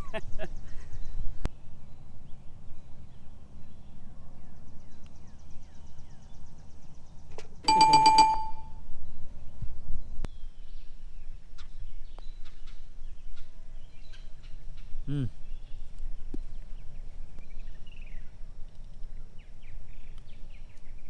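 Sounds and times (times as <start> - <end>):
sharp metallic ring: 7.7 - 8.7.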